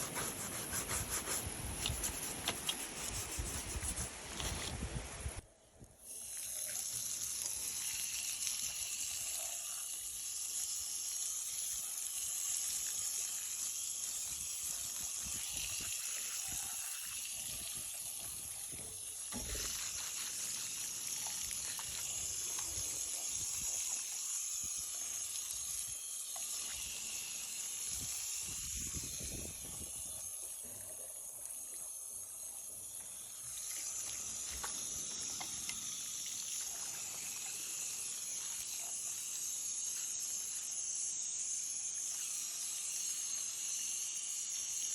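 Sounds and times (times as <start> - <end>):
scrubbing and handling noises: 0.0 - 5.0, 19.3 - 23.2
water running over plastic: 6.1 - 29.6.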